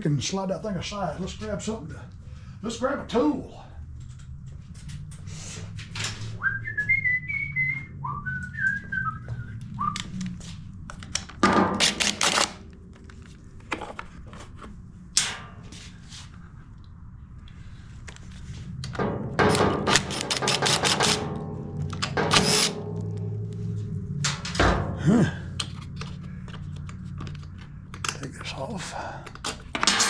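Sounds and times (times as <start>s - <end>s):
person whistling a tune: 6.4s - 10.0s.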